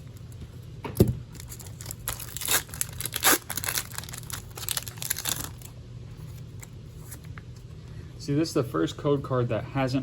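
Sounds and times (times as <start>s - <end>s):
wrapper tearing and crinkling: 1.3s - 5.7s.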